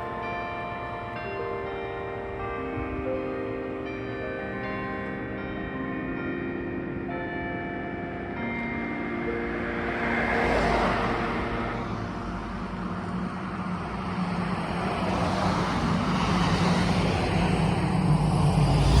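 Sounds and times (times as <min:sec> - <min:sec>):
church bells humming: 0:00.0 - 0:19.0
vehicle engine and tyre noise: 0:09.6 - 0:19.0.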